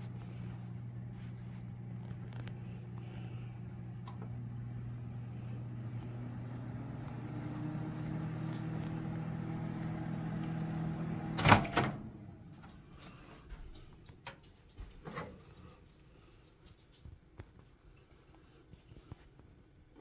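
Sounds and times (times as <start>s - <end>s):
microwave oven humming: 0.0s - 15.5s.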